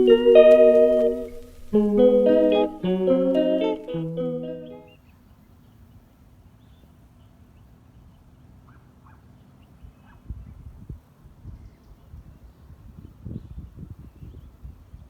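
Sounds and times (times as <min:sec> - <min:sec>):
intro music: 0:00.0 - 0:04.9.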